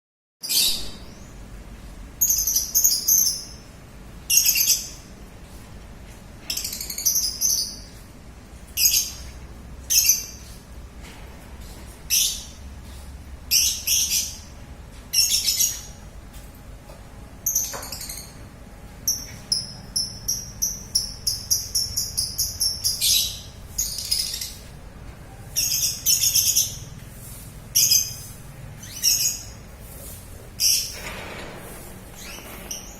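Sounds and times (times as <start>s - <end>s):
lovebird chirping: 19.0s - 24.7s, 27.8s - 29.6s.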